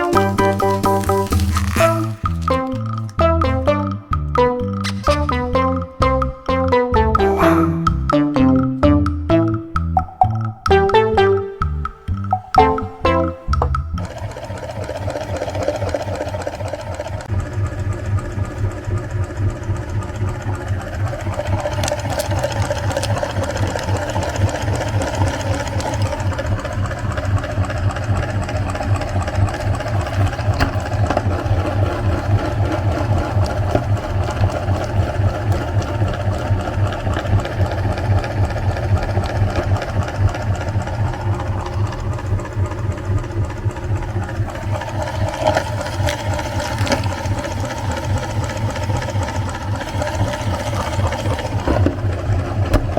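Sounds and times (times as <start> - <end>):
electric meat grinder running: 14.0 - 52.9.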